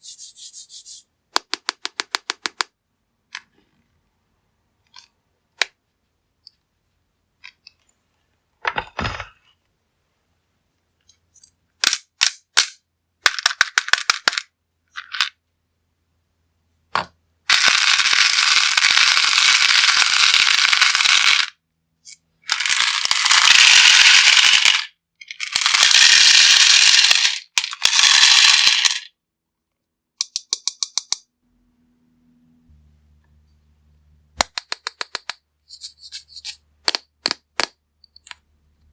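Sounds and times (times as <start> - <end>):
candies clattering into a container: 22.5 - 29.1.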